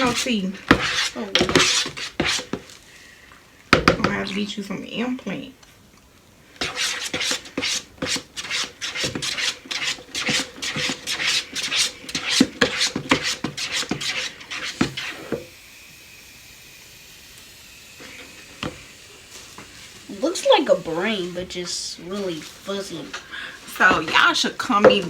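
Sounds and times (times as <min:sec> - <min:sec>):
spoon scraping a bowl: 0:06.6 - 0:15.4.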